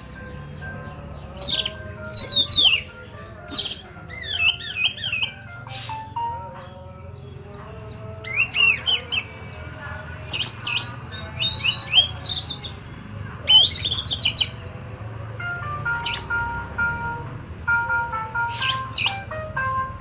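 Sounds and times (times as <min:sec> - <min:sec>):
magpie-robin whistled song: 0:00.0 - 0:07.0, 0:07.9 - 0:12.8, 0:13.4 - 0:14.6, 0:15.8 - 0:17.1, 0:18.3 - 0:19.4.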